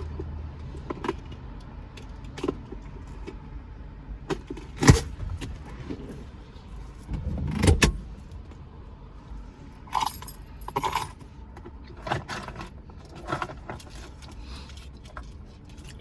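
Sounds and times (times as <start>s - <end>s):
low car rumble: 0.0s - 16.0s
keys jangling: 9.9s - 11.1s.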